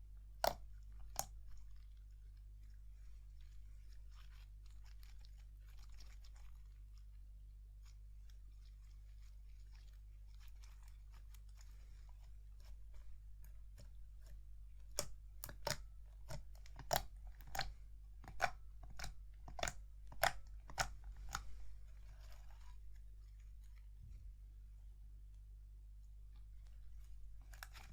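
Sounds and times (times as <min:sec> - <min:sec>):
slime crackling: 0:09.0 - 0:22.8.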